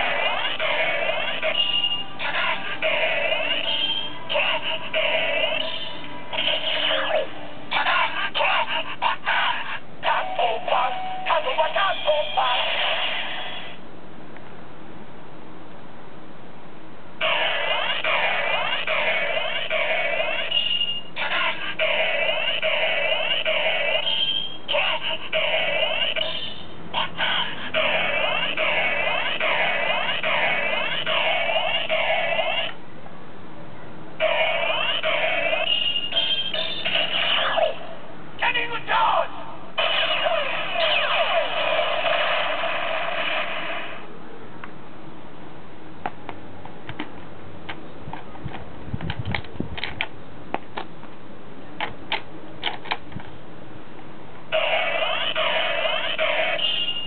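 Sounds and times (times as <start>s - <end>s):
toy belt electronic chirps: 0.0s - 4.6s, 19.5s - 21.5s, 22.8s - 26.6s, 34.3s - 37.6s, 54.6s - 57.0s
toy electronic sound effect: 0.0s - 13.7s, 17.2s - 32.7s, 34.2s - 37.8s, 39.8s - 44.0s, 54.5s - 57.0s.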